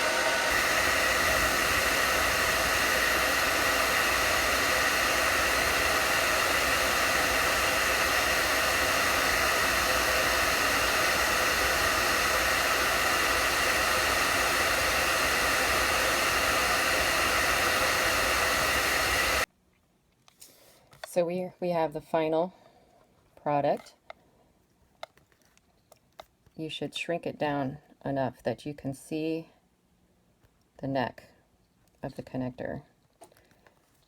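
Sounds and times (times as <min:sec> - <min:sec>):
hairdryer running: 0:00.0 - 0:19.5.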